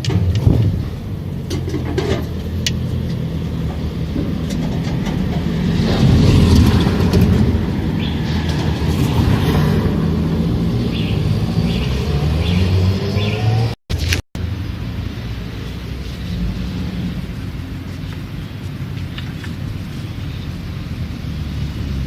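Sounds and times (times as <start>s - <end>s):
car engine idling: 14.4s - 22.0s.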